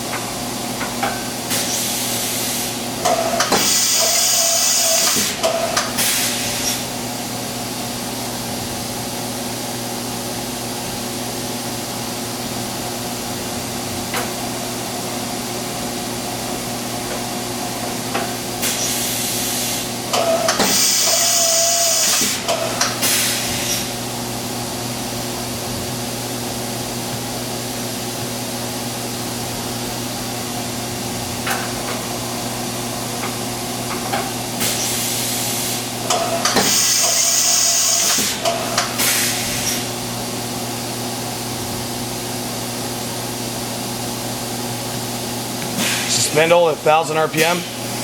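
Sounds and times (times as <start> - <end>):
compressed air hissing blasts: 1.5 - 2.8, 34.6 - 35.9.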